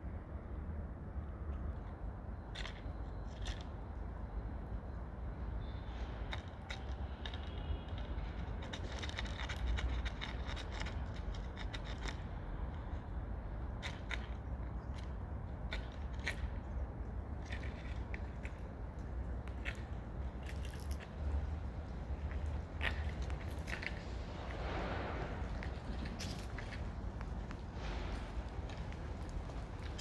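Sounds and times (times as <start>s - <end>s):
cats eating crunching: 13.8s - 30.0s.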